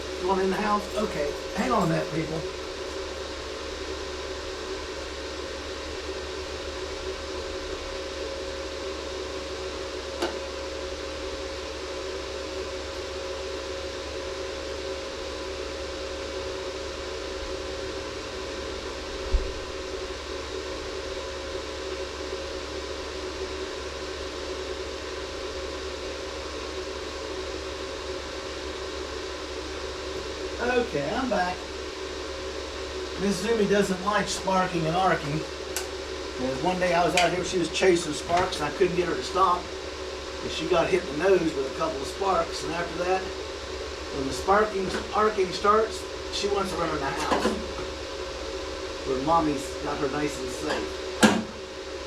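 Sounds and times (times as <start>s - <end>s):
fan humming: 0.0s - 52.0s.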